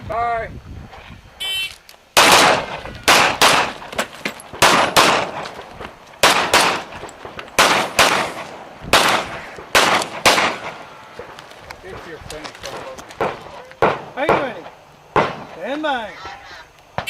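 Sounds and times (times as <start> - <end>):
pistol shots: 1.5 - 5.6, 6.2 - 11.4, 12.7 - 15.6.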